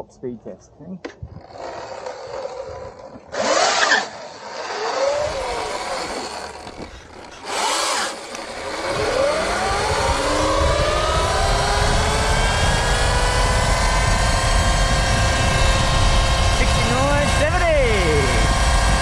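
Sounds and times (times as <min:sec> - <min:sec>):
electric dirt bike motor whine: 0:01.3 - 0:19.0
loud rushes of noise: 0:03.3 - 0:17.5.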